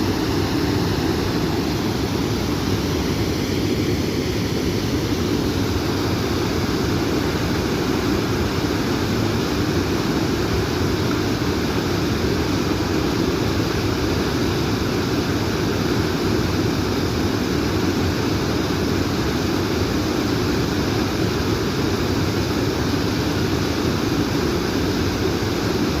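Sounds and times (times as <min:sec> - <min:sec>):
faint hiss: 0:00.0 - 0:26.0
water rushing: 0:00.0 - 0:26.0.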